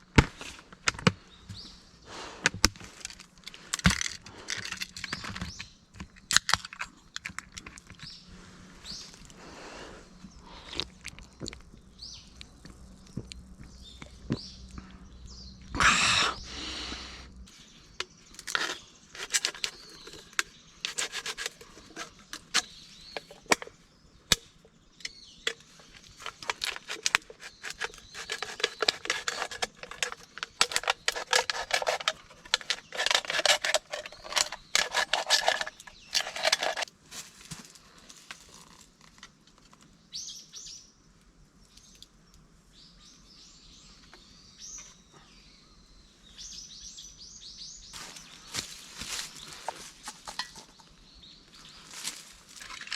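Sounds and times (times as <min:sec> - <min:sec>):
birds chirping: 0:00.0 - 0:36.9, 0:39.8 - 0:52.9
rubbing and scraping handling sounds: 0:00.1 - 0:10.3, 0:15.8 - 0:23.8, 0:25.0 - 0:39.8, 0:48.0 - 0:51.0.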